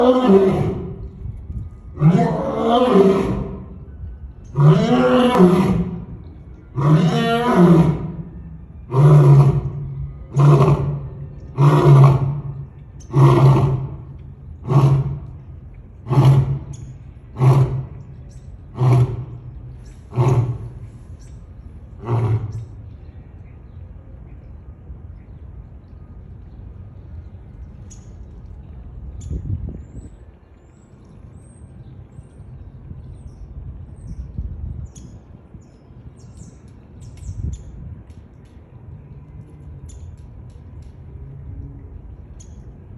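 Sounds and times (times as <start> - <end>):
lion roaring and grunting: 0.0 - 1.0, 1.9 - 3.8, 4.5 - 6.1, 6.7 - 15.4, 16.0 - 16.7, 17.3 - 20.9, 22.0 - 22.7.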